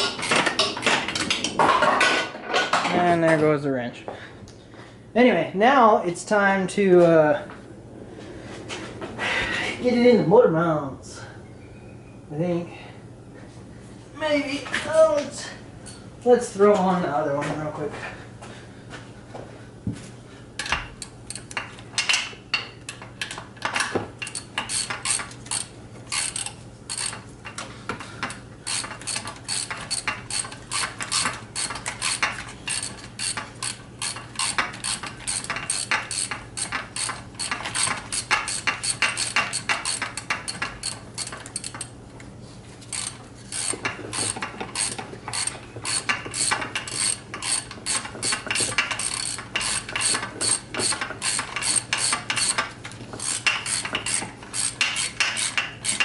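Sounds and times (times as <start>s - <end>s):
ratchet wrench clicking: 22.9s - 27.6s, 28.2s - 41.9s, 42.9s - 56.0s.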